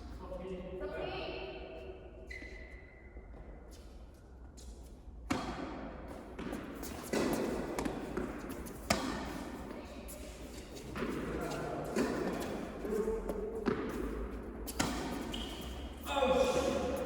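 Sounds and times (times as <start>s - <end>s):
tennis ball impacts: 5.2s - 9.8s, 10.8s - 15.7s.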